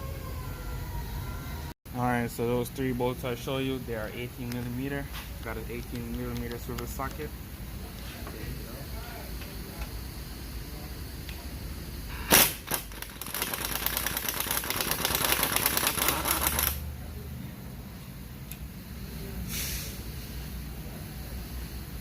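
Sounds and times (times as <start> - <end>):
wrench clicking rattle: 12.4 - 16.8.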